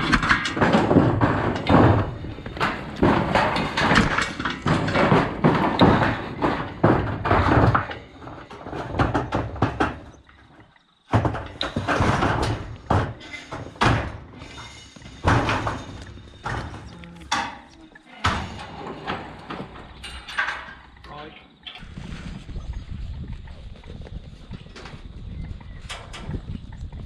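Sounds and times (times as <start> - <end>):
metal gate bangs and knocks: 0.0 - 10.2, 11.1 - 21.8.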